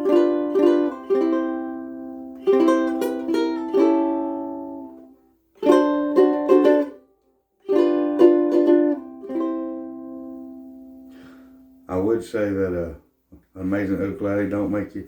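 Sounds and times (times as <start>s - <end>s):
ukulele strummed chords: 0.0s - 12.0s.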